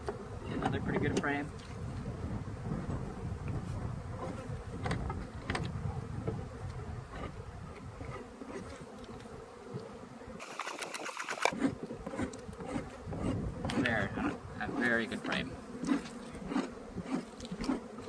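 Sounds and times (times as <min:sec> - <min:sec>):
honey bees buzzing: 0:00.0 - 0:18.0
sharp clicks: 0:10.4 - 0:11.6.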